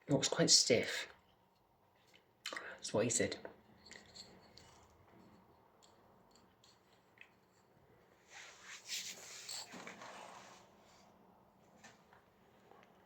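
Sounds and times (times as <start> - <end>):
rustling rubbing sound: 8.2 - 11.1.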